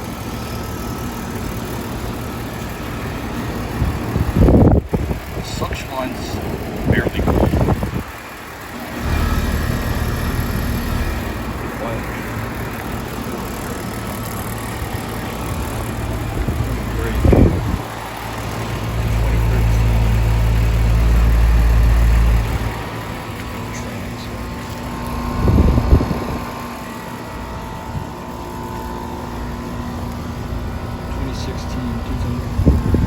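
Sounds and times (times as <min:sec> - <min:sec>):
air conditioner units humming: 0:00.0 - 0:33.0
loud bump: 0:09.0 - 0:11.8
heavy low rumble: 0:09.0 - 0:26.7.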